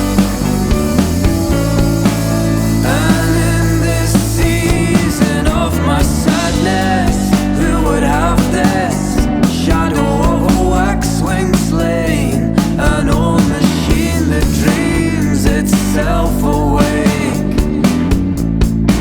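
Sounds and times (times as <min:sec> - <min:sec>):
wavering lead melody: 0:00.0 - 0:04.9
rock band music: 0:00.0 - 0:19.0.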